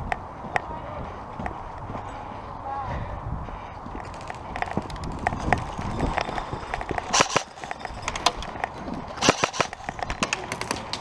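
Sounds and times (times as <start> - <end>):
gear rattling: 3.9 - 11.0
sharp clicks and knocks: 3.9 - 11.0.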